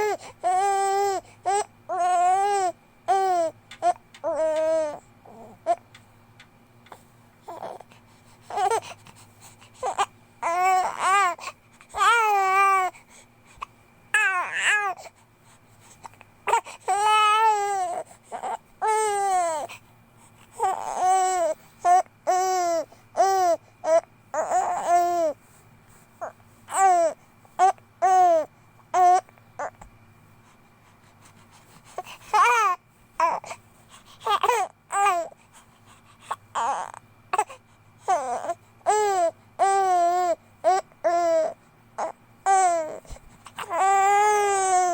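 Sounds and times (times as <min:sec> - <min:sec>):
baby crying and cooing: 0:00.0 - 0:05.8, 0:07.4 - 0:13.0, 0:14.1 - 0:15.2, 0:16.4 - 0:19.8, 0:20.5 - 0:25.4, 0:26.2 - 0:29.8, 0:32.0 - 0:33.6, 0:34.2 - 0:35.4, 0:36.3 - 0:44.9.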